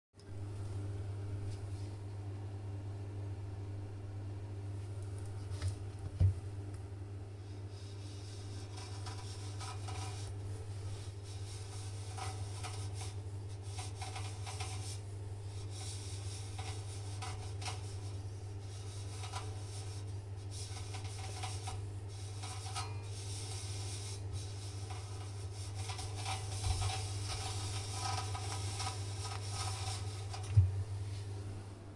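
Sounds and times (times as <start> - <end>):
steady low hum: 0.2 - 31.9
scraping against metal drum: 7.9 - 31.6.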